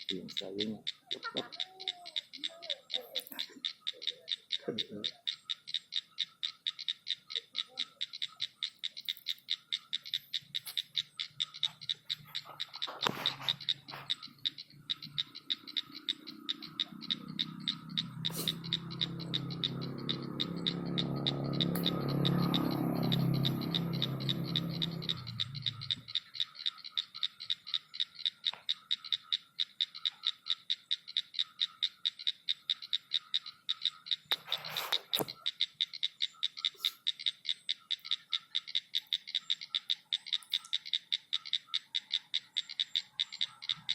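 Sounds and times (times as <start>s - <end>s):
small animal calling in high pulses: 0.0s - 43.9s
brief rustle: 34.3s - 35.4s.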